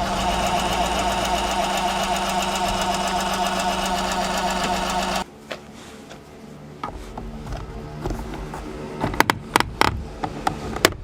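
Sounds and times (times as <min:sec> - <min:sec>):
mirror motor grinding rattle: 0:00.0 - 0:05.2.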